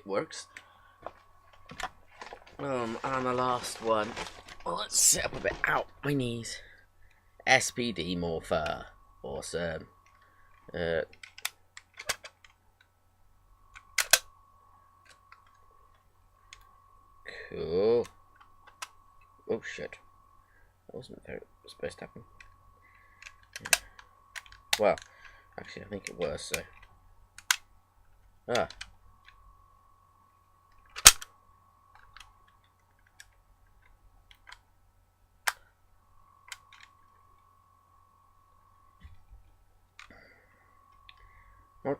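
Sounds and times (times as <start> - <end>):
faint steady high tone: 0.0 - 41.9
plastic toy clicks and snaps: 13.8 - 14.2, 27.4 - 27.6, 30.9 - 31.3
plastic toy clicking: 23.2 - 25.1.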